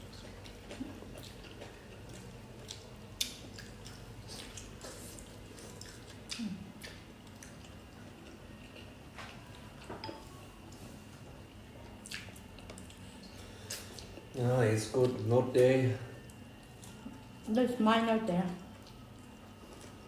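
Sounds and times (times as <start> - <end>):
people chewing food: 0.0 - 17.5, 18.2 - 20.0.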